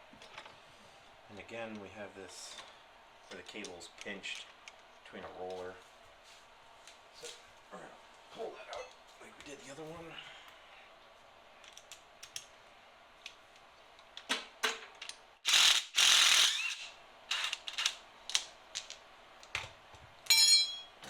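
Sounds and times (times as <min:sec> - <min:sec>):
metal part ringing: 0:20.3 - 0:21.0.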